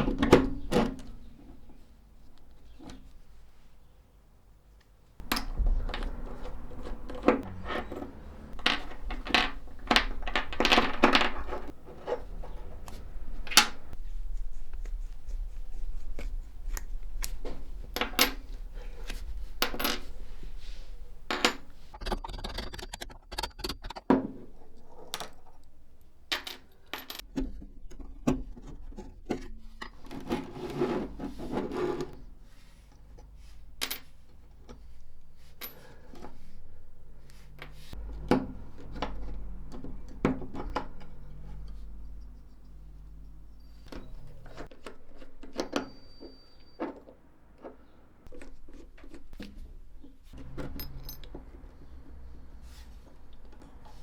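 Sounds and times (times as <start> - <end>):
small metal parts clinking: 5.2 - 14.0, 50.6 - 51.4.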